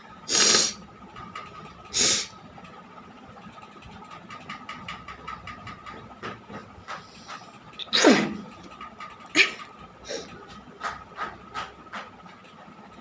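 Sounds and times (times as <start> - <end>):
person sneezing: 7.9 - 8.4, 9.4 - 10.3.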